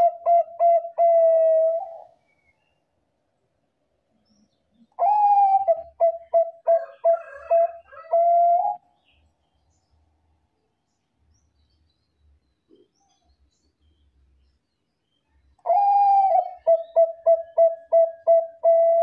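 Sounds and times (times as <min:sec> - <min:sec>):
dove cooing: 0:00.0 - 0:02.2, 0:05.0 - 0:08.8, 0:15.6 - 0:19.0.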